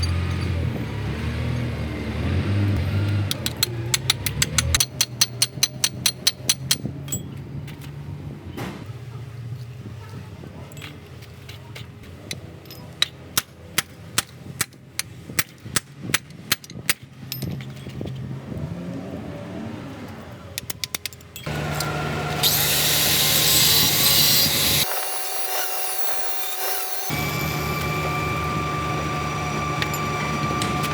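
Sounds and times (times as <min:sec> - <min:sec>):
power tool running with hiss: 0:21.5 - 0:30.9.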